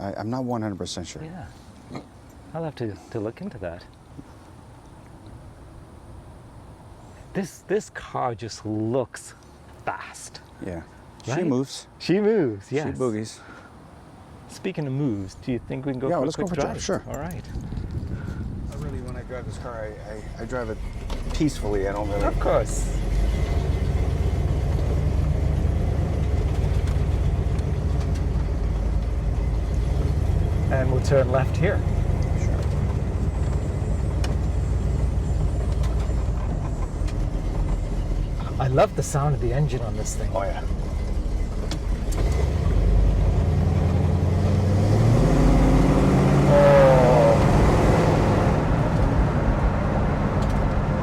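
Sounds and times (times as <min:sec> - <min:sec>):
car engine rumbling: 0:00.0 - 0:51.0.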